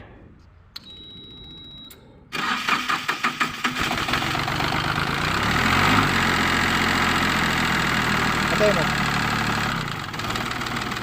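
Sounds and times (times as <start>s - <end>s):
diesel engine cranking and starting: 2.3s - 11.0s.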